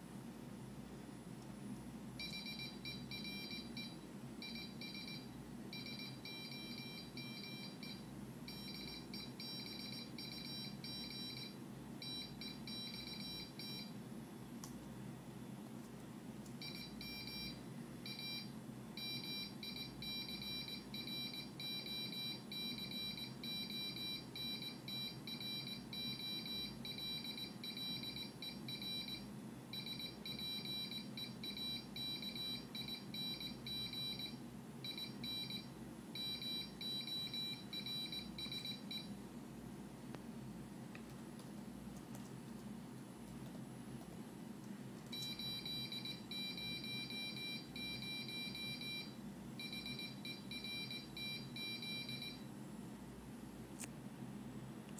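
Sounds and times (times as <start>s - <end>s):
steady low hum: 0.0s - 54.9s
buzzer beeping morse code: 2.2s - 13.9s, 16.6s - 39.1s, 45.1s - 52.4s.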